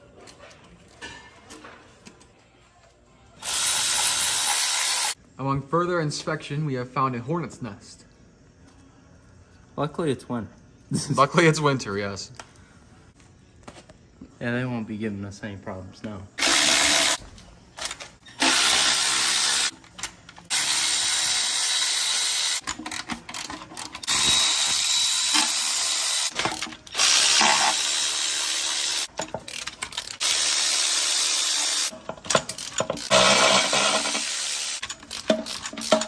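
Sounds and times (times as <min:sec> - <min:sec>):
electric ratchet spinning bolts: 0:03.4 - 0:05.2, 0:16.4 - 0:17.2, 0:17.8 - 0:36.0.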